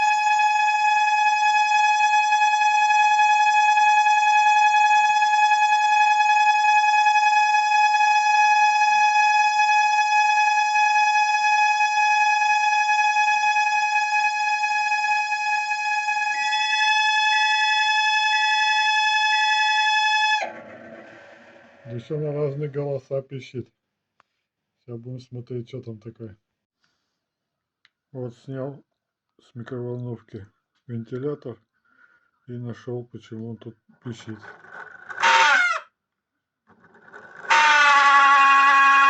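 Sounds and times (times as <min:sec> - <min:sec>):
pulsing high tone: 0:00.0 - 0:18.4.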